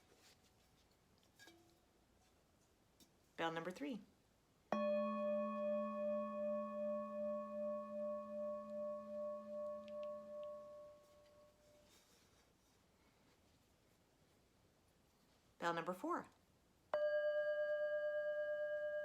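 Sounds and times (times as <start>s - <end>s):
bell ringing: 4.7s - 11.4s.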